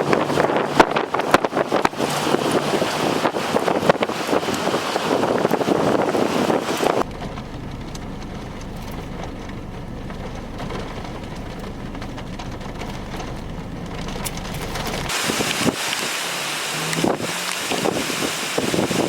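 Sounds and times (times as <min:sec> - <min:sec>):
strong wind gusting on microphone: 0:00.0 - 0:07.2, 0:10.2 - 0:19.0
steady low rumble with hiss: 0:07.0 - 0:19.0.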